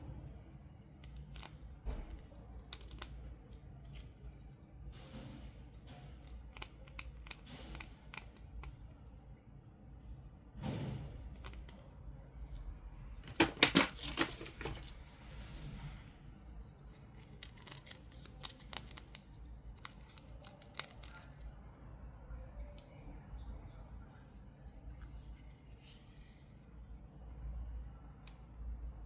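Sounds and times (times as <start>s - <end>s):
plastic and cardboard clicks: 1.0s - 4.1s, 6.2s - 8.8s.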